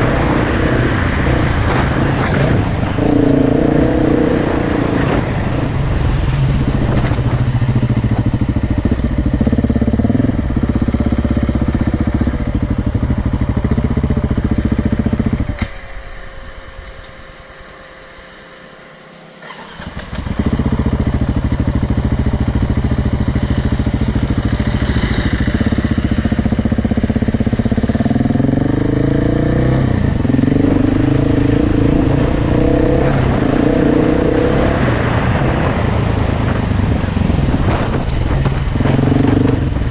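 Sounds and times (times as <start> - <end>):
dirt bike engine revving: 0.0 - 15.8, 19.4 - 35.5.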